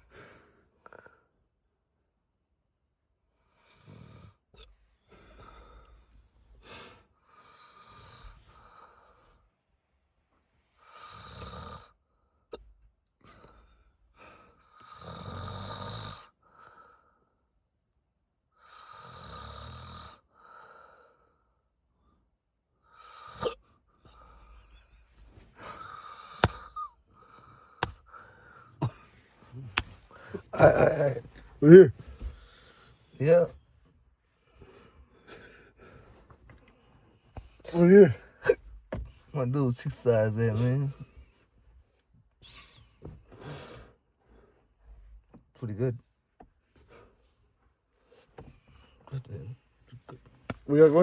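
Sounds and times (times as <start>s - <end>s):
man snoring: 10.8s - 12.0s, 14.8s - 16.4s, 18.8s - 20.2s, 27.8s - 33.5s.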